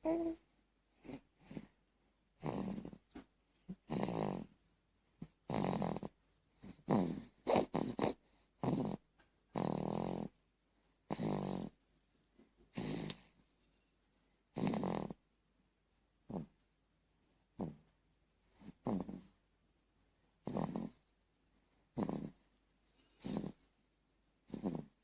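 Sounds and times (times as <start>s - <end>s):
baby snoring: 0.0s - 0.4s, 2.4s - 3.2s, 3.8s - 10.4s, 11.1s - 11.8s, 12.7s - 13.4s, 14.5s - 15.2s, 16.3s - 16.5s, 17.6s - 17.9s, 18.6s - 19.4s, 20.4s - 21.0s, 22.0s - 22.5s, 23.2s - 23.7s, 24.4s - 25.0s
baby snorting: 1.0s - 1.7s, 2.4s - 4.6s, 5.2s - 10.3s, 11.1s - 11.8s, 12.7s - 13.4s, 14.5s - 15.2s, 16.3s - 16.5s, 17.6s - 17.9s, 18.6s - 19.4s, 20.4s - 21.0s, 22.0s - 22.4s, 23.2s - 23.7s, 24.4s - 25.0s.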